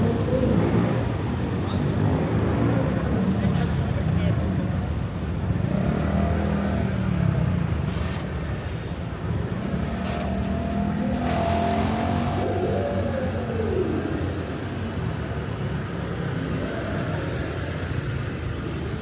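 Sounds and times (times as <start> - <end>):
car engines and tyres rumble: 0.0 - 19.0.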